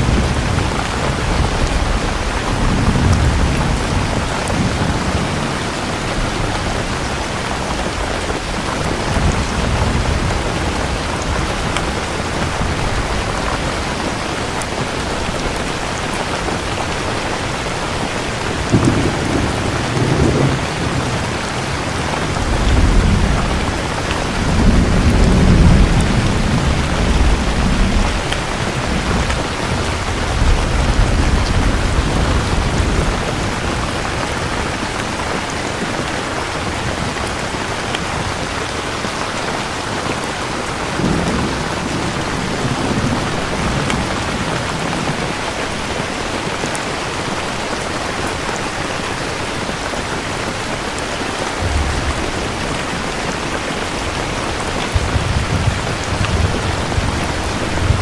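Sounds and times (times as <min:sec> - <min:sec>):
rolling thunder: 0:00.0 - 0:15.6, 0:17.6 - 0:35.4, 0:40.8 - 0:46.0, 0:51.6 - 0:58.0
heavy rain hissing: 0:00.0 - 0:58.0.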